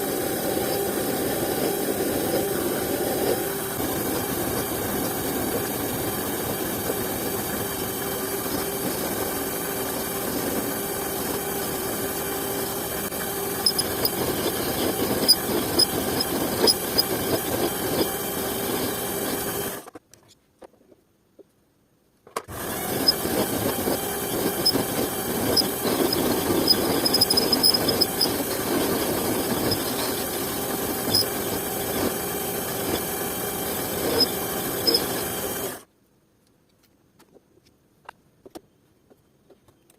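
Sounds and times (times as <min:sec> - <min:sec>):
small motor whining: 0:00.0 - 0:19.9, 0:22.5 - 0:35.9
scattered ticks: 0:24.6 - 0:31.4.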